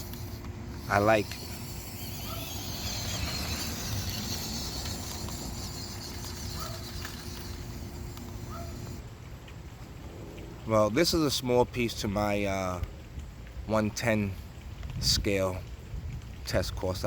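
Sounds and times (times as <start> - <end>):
steady low hum: 0.0 - 10.7
outdoor background hiss: 0.0 - 17.0.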